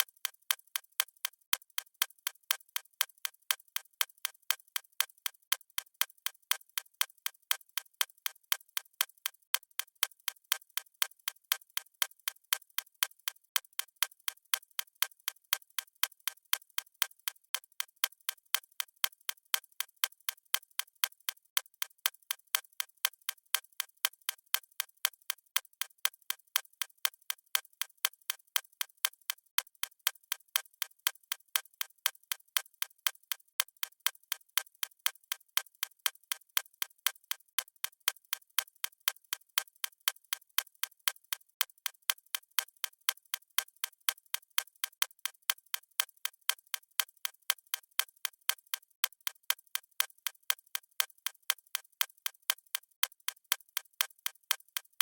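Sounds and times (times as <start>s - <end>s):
timer ticking: 0.0s - 12.8s, 31.7s - 55.0s.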